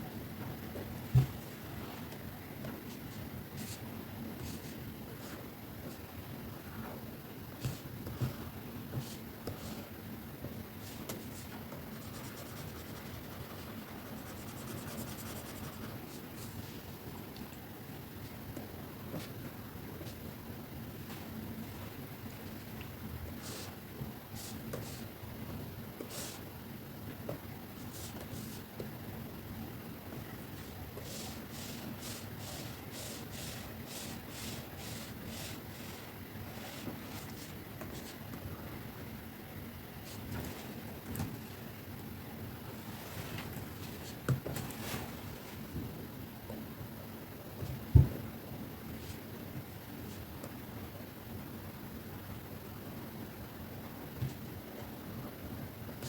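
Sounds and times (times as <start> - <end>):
steady white-noise hiss: 0.0 - 56.0
stylus scratching on tablet: 11.2 - 16.4, 30.6 - 38.2
background hiss: 21.4 - 46.5.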